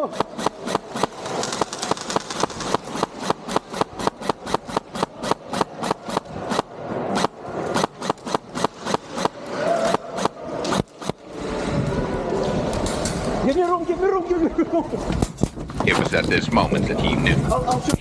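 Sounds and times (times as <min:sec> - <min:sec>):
airsoft guns firing: 0:00.0 - 0:11.2.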